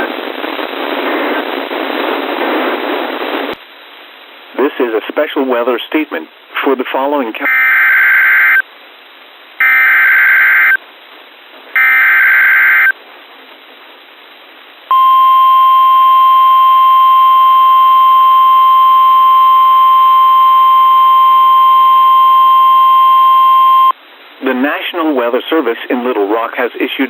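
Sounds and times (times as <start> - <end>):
steady warning alarm tone: 7.5 - 8.6, 9.6 - 10.8, 11.8 - 12.9, 14.9 - 23.9
screeching digital data bursts: 9.6 - 10.8, 11.8 - 12.9.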